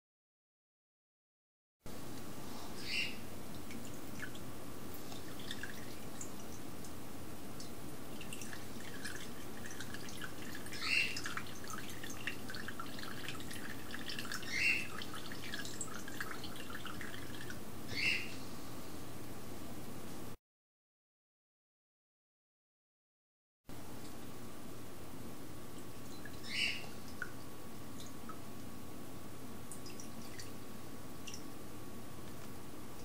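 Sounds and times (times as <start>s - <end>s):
coffee dripping: 3.4s - 18.1s, 25.7s - 28.7s, 29.7s - 30.6s, 31.2s - 31.5s.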